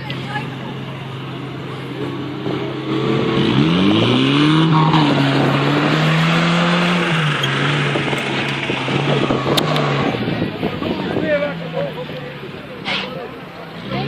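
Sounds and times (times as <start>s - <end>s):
vehicle engine revving: 0.0s - 14.0s.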